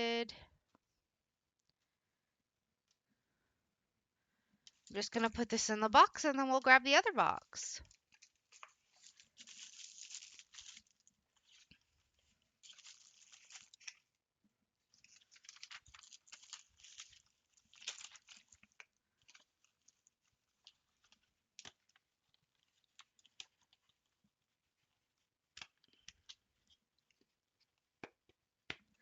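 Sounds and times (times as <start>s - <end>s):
plastic packaging crinkling: 7.8s - 14.2s, 14.9s - 24.1s.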